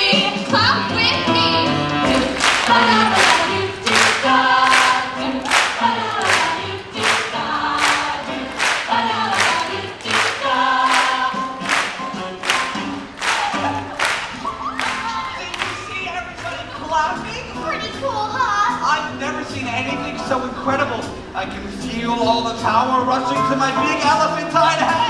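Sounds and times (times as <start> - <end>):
young performers singing in chorus: 0.0 - 14.2
musical backing track: 0.0 - 25.0.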